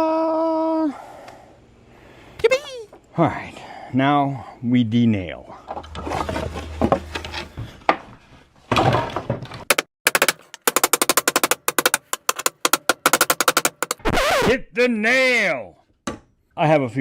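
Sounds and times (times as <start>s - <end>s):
hammer striking nails: 9.7s - 14.0s.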